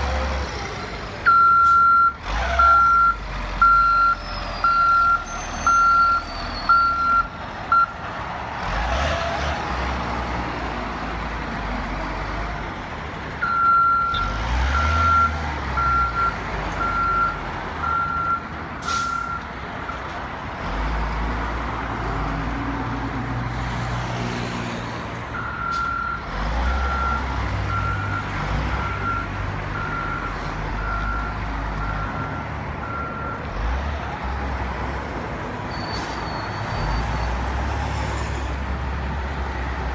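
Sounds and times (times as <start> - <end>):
diesel engines rumbling: 0.0 - 39.9
reversing alarm beeping: 1.3 - 7.9, 13.4 - 14.2.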